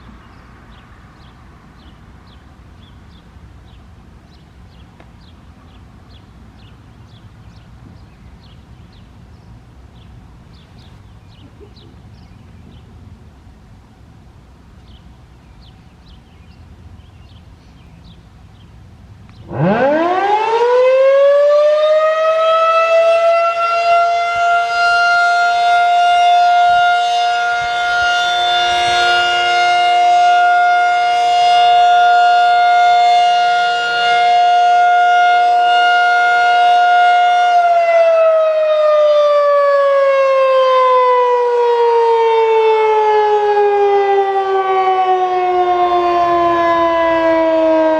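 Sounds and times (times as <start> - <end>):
warning siren wailing: 19.4 - 47.9.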